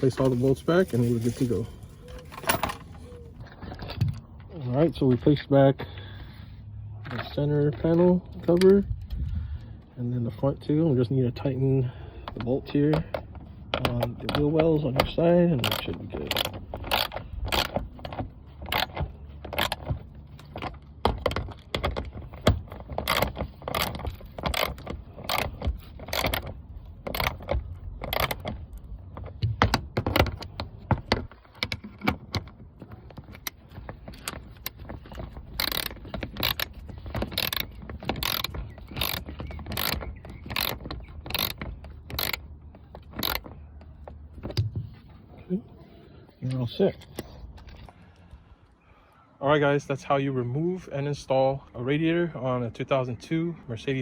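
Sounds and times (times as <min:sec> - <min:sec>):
ratchet wrench clicking: 0:34.2 - 0:43.5.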